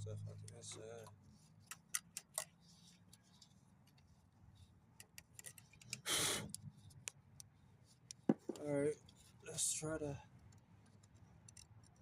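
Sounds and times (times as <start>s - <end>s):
tool clicking and scraping: 0.5s - 4.1s, 5.0s - 6.1s
short hissing rush: 6.1s - 6.5s.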